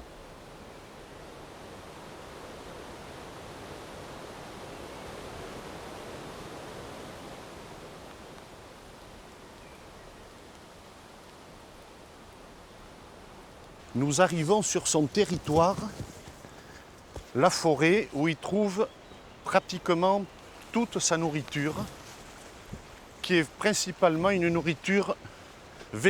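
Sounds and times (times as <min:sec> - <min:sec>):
rushing outdoor noise: 0:10.9 - 0:26.0.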